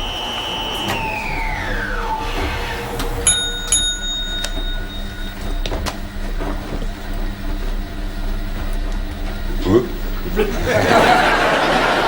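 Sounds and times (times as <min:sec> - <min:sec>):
steady low hum: 0:01.3 - 0:12.0
small bell ringing: 0:03.2 - 0:05.7.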